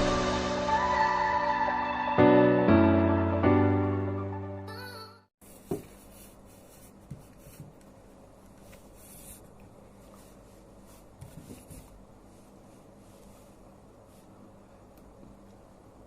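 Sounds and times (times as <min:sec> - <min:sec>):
soft taps or rustles: 0:05.4 - 0:12.0.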